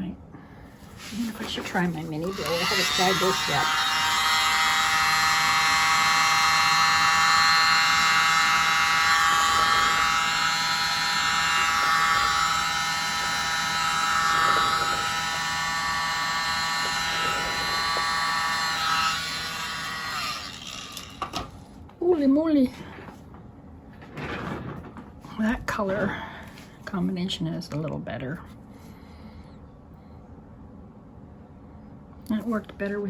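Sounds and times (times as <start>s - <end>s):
mini blower whining: 0.9s - 21.7s.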